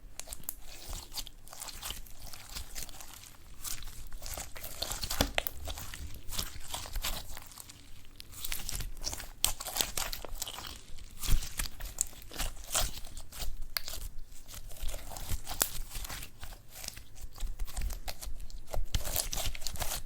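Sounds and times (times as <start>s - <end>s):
slime squished by hand: 0.1s - 20.0s.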